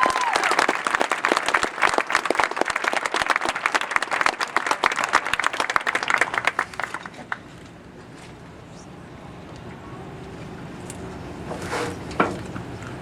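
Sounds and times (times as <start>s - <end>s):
stadium crowd applauding: 0.0s - 7.5s.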